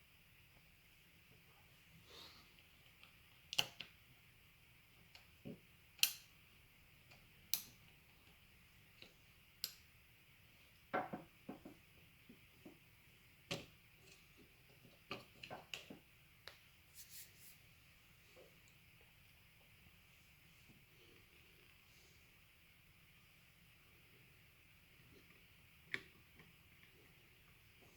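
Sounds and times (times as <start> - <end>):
light clicks and taps of parts: 2.6 - 4.0, 4.9 - 6.4, 7.0 - 9.9.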